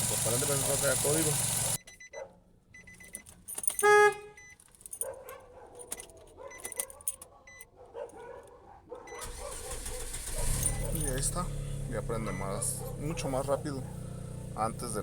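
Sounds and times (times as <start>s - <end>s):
car keys jangling and clicking: 0.2s - 11.6s.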